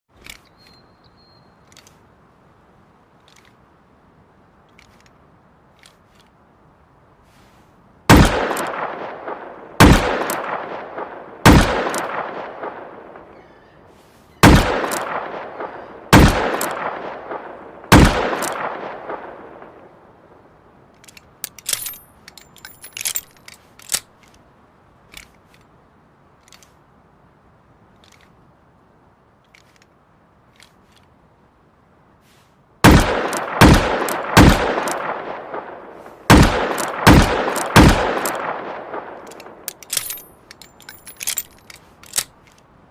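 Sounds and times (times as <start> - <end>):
revolver gunshots echoing: 8.1 - 13.4, 14.4 - 19.9, 32.8 - 39.7.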